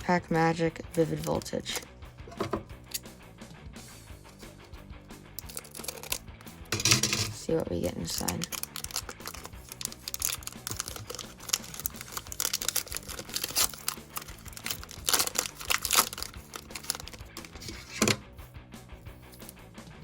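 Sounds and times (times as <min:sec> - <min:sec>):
foil wrapper tearing and crinkling: 0:05.4 - 0:06.3, 0:08.0 - 0:18.1.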